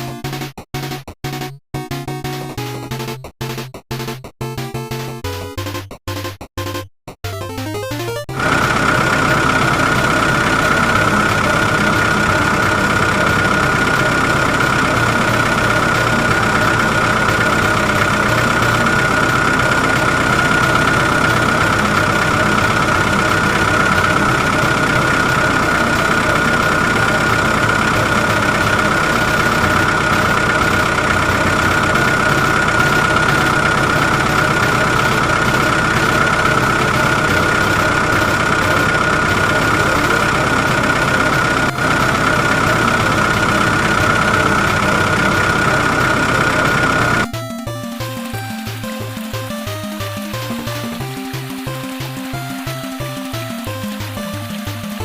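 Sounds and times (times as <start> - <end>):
excavator engine running: 8.3 - 55.0
high-pitched whine: 8.4 - 47.3.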